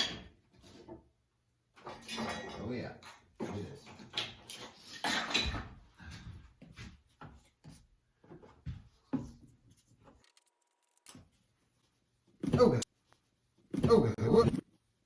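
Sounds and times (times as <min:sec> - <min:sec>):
objects clattering on workbench: 0:00.0 - 0:01.1, 0:01.7 - 0:05.9.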